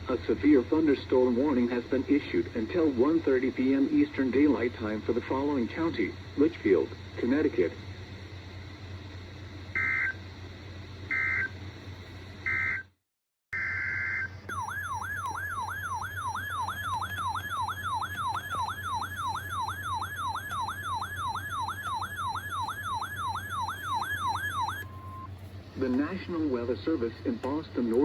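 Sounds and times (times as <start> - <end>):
siren-like attention tone: 13.6 - 25.3.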